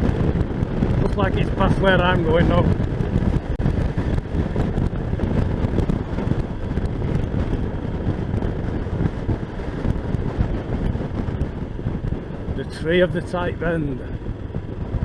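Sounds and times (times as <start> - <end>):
motorcycle engine running: 0.0 - 15.0
wind noise on microphone: 0.0 - 15.0.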